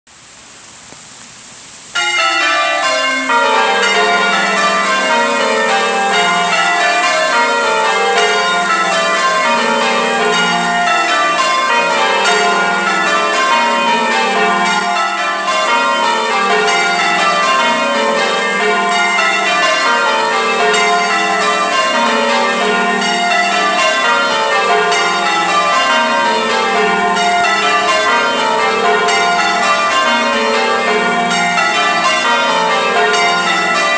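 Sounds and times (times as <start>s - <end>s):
church bells change ringing: 2.0s - 33.9s.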